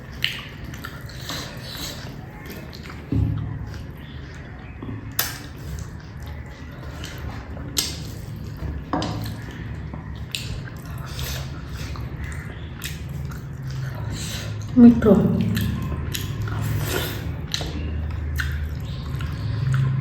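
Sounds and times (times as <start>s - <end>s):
wet chewing: 0.0s - 20.0s
sharp mouth clicks: 5.2s - 6.0s.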